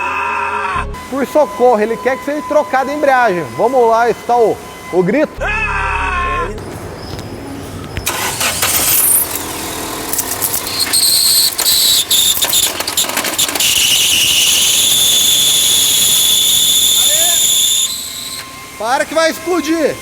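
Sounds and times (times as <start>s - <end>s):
high-pitched clutch squeal: 0.0s - 20.0s
engine running: 0.8s - 20.0s
rattling and clicking: 8.0s - 14.6s.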